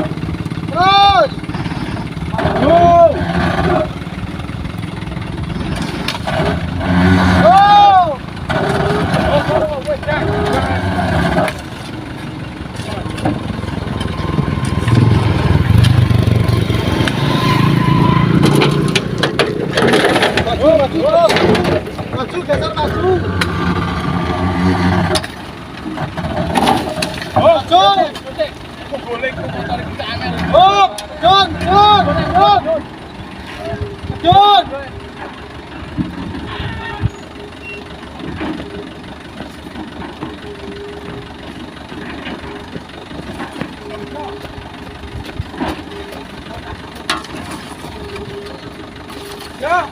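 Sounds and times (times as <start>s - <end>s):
engine running with deep hum: 0.0s - 49.9s.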